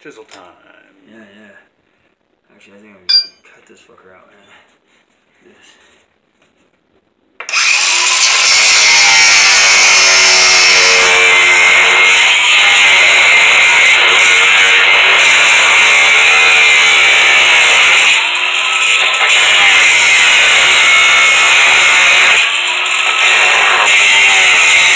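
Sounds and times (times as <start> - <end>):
power tool cutting metal track: 7.5 - 24.9.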